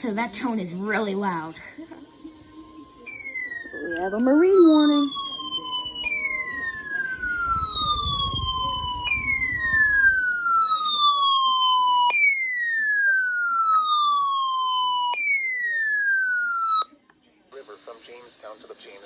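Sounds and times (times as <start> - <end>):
weather alert radio alarm: 3.1 - 16.9.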